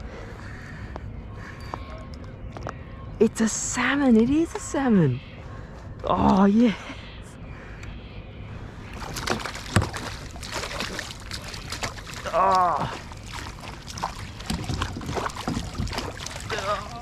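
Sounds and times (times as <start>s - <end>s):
water splashing around a kayak: 8.9s - 17.0s.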